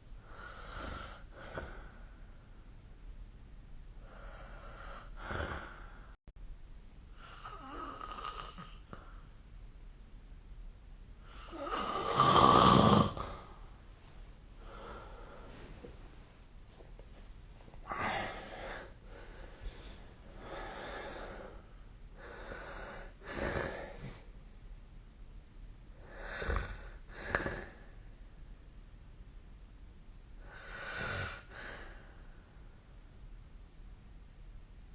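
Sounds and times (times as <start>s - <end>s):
person snoring and breathing noisily: 0.3s - 2.0s, 4.0s - 6.0s, 7.2s - 9.1s, 11.3s - 13.5s, 17.8s - 19.4s, 20.4s - 24.2s, 26.0s - 27.9s, 30.4s - 32.0s.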